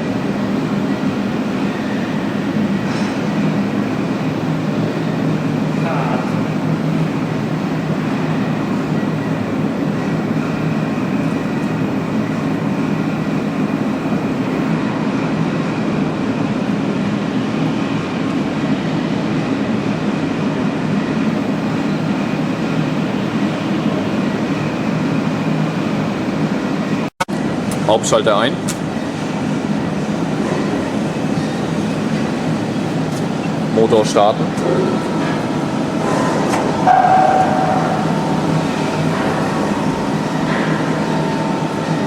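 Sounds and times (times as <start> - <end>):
machinery hum: 0.0 - 42.0
faint steady high tone: 36.8 - 42.0.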